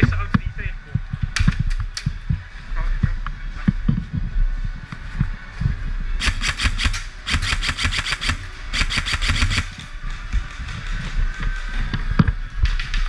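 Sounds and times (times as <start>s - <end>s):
airsoft gun full-auto bursts: 6.2s - 9.8s.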